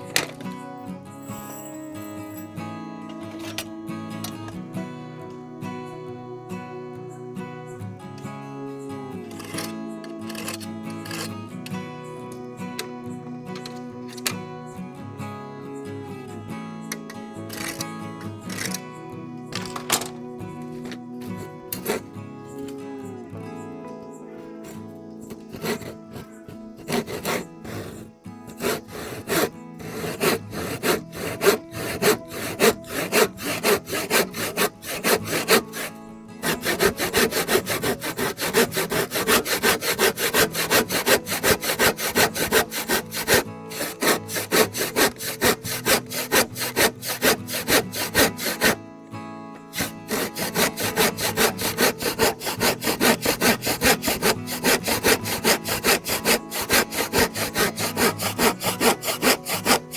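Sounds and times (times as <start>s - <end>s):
handsaw cutting wood: 0.0s - 0.4s, 9.3s - 11.4s, 17.5s - 17.9s, 18.5s - 18.8s, 20.6s - 22.1s, 24.6s - 48.8s, 49.7s - 59.9s.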